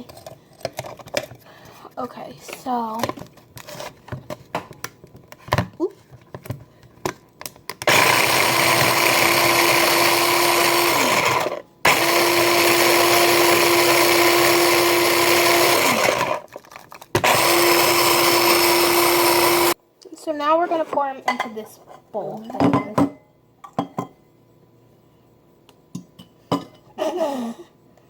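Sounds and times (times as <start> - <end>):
food processor motor running: 7.8 - 16.5, 17.2 - 19.8.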